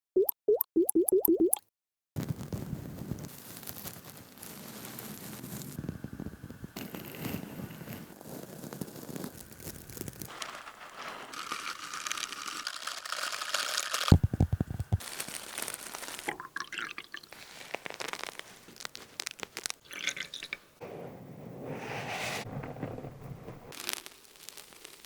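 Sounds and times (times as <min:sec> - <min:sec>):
liquid sounds: 0:00.0 - 0:01.6
crinkly crunchy handling noises: 0:03.3 - 0:05.8, 0:06.8 - 0:16.5, 0:17.3 - 0:19.8.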